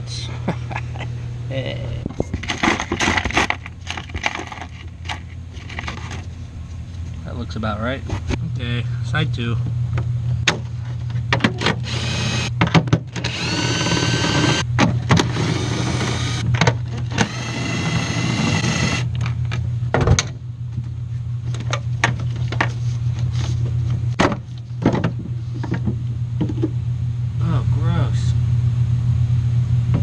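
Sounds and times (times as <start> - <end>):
steady low hum: 0.0 - 30.0
clicks and knocks of parts: 2.3 - 6.3
power tool whirring: 11.6 - 12.5, 13.1 - 14.6, 15.2 - 16.4, 17.0 - 19.1.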